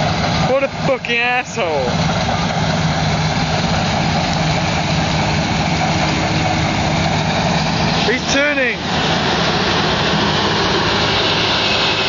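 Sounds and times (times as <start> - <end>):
combine harvester engine drone: 0.0 - 12.0
machinery noise: 0.0 - 12.0.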